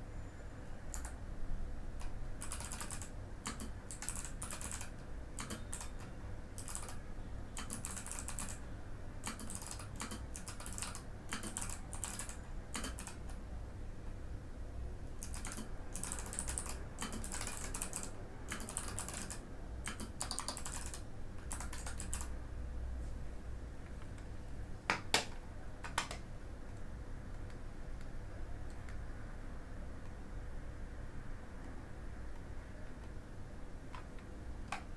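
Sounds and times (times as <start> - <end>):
mechanical keyboard typing: 0.9 - 1.2, 2.0 - 7.0, 7.6 - 8.6, 9.2 - 13.4, 15.2 - 22.4, 25.2 - 26.2.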